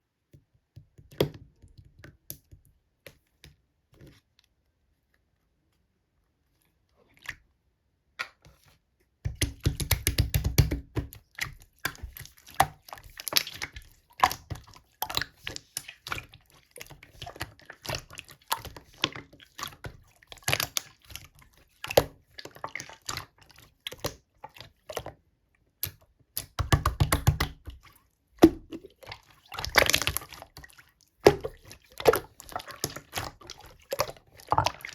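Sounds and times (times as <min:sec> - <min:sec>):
hands squishing slime: 0:09.3 - 0:25.2, 0:25.8 - 0:34.9.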